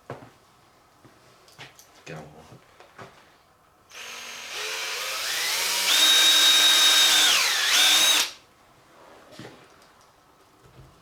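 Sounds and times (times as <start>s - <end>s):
electric drill drilling rubber: 3.9s - 8.4s.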